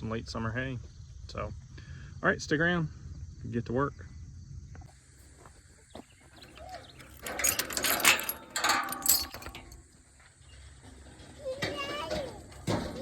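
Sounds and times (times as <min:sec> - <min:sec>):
mechanical rattling and clattering: 0:06.4 - 0:09.8.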